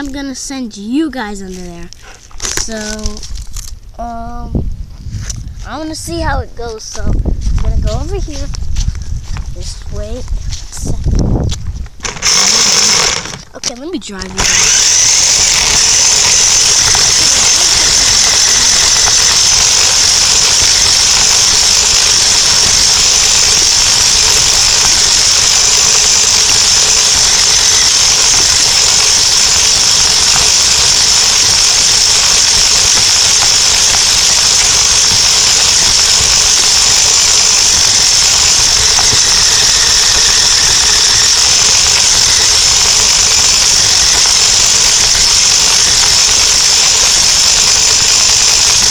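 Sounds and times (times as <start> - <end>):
toy truck motor whining: 12.0 - 48.9.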